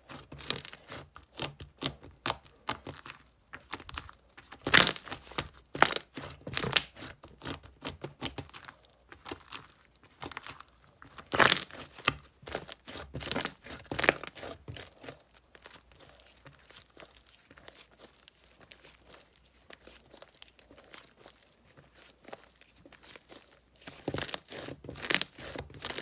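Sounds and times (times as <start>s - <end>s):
slime crackling and popping: 0.2s - 26.0s.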